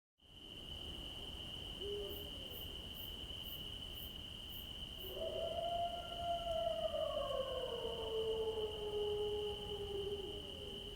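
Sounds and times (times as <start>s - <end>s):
cricket trill: 0.3s - 10.9s
long howl: 5.0s - 10.9s.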